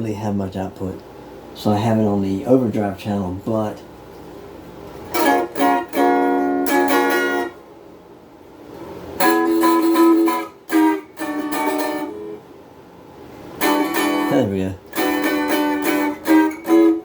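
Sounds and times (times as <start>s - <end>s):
overdriven electric guitar: 4.9s - 7.6s, 9.2s - 12.5s, 13.5s - 17.0s.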